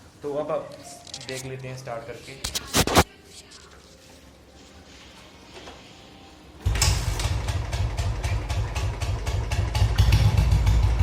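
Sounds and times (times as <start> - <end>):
motorcycle engine thumping idle: 6.6 - 11.0.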